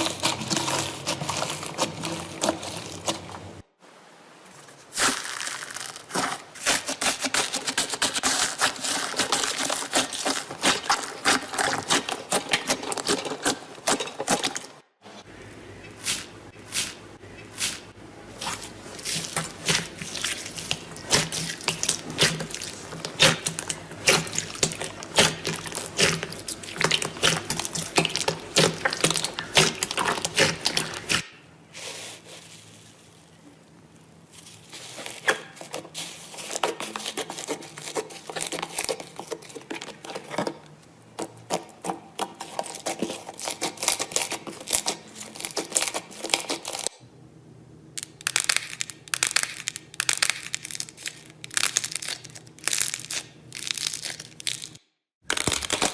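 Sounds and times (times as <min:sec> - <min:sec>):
slime crackling and popping: 0:18.4 - 0:31.2, 0:48.0 - 0:55.9.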